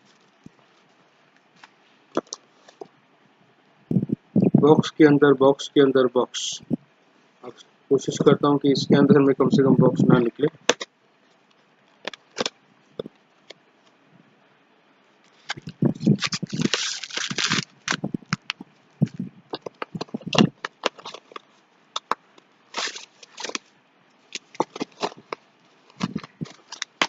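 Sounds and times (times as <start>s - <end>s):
paper packing crinkling: 15.3s - 22.1s, 22.7s - 23.7s, 24.3s - 27.0s.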